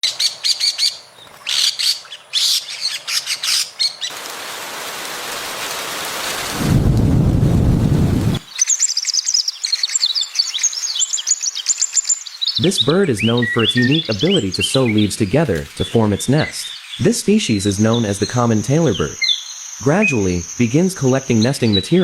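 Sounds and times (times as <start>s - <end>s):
small birds chirping: 0.0s - 4.2s, 8.3s - 22.0s
steady rain: 4.1s - 8.5s
thunder rumble: 6.2s - 8.5s.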